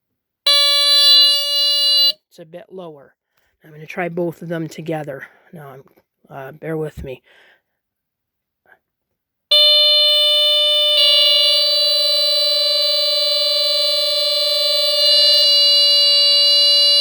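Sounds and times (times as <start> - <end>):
second smoke alarm tone: 0.5 - 2.2, 9.5 - 17.0
smoke detector alarm tone: 0.5 - 2.2, 9.5 - 17.0.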